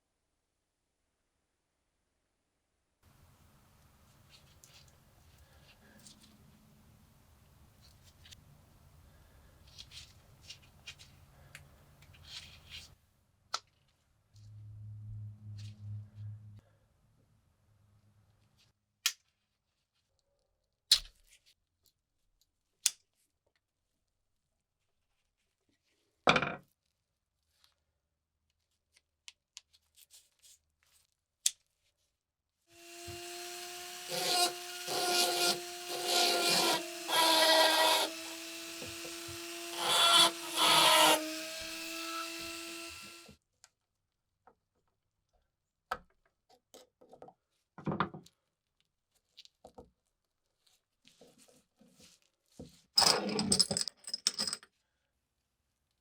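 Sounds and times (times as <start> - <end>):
loud grinding: 32.8 - 43.3
power tool whining: 32.8 - 43.3.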